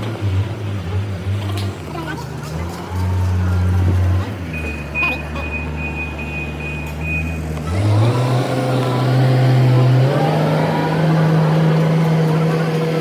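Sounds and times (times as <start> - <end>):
excavator diesel engine running: 0.0 - 13.0
high beeping: 4.5 - 7.4.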